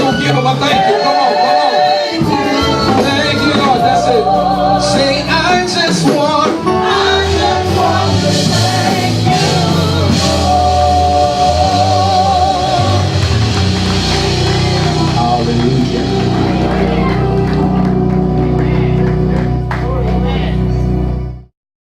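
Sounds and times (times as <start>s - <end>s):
person singing with vibrato: 0.0s - 13.4s
sustained bass accompaniment: 0.0s - 21.5s.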